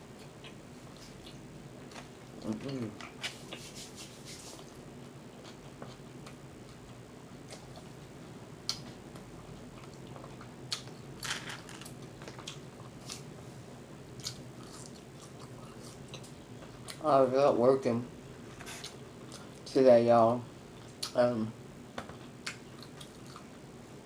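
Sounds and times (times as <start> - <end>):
chewing food: 8.7 - 11.1, 11.8 - 13.3, 22.1 - 23.6.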